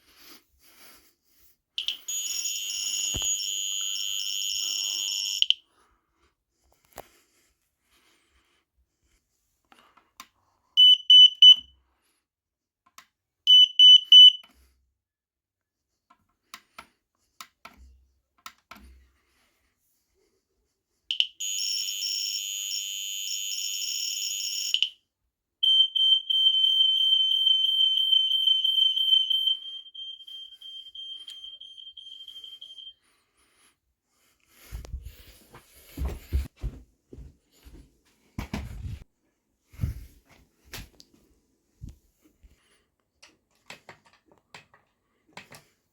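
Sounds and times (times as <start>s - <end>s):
shrill smoke alarm beeps: 1.8s - 5.6s, 10.8s - 11.7s, 13.5s - 14.4s, 21.1s - 25.0s, 25.6s - 33.0s
steady high-pitched alarm tone: 1.8s - 5.6s, 21.1s - 24.9s, 25.6s - 33.2s
harsh continuous alarm: 1.9s - 5.5s, 25.6s - 33.3s.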